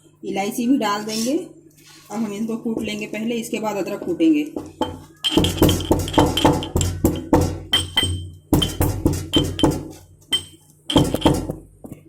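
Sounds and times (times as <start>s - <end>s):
pestle pounding in mortar: 4.6s - 12.0s.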